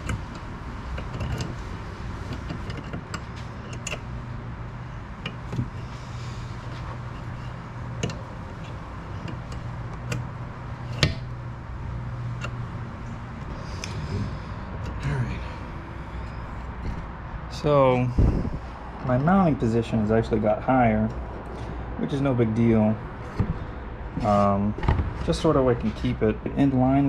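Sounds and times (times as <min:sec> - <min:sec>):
clicks and knocks of tools: 0:00.0 - 0:01.6, 0:02.2 - 0:04.1, 0:06.7 - 0:10.3
steady low hum: 0:00.0 - 0:27.0.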